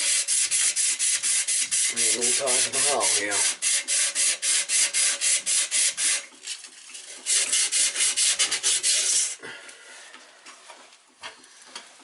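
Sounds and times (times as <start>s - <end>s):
scrubbing metal pipe: 0.0s - 9.4s.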